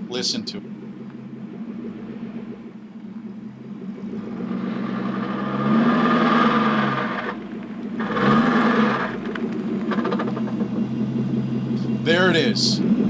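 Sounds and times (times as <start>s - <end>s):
car engine hum: 0.0s - 13.0s
loud grinding transmission noise: 3.5s - 13.0s.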